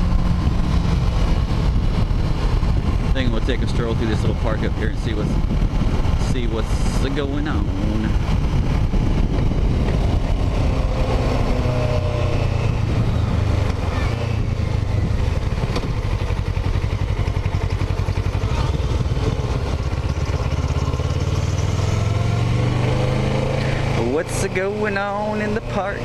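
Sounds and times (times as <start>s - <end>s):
motorcycle engine running: 0.0s - 26.0s.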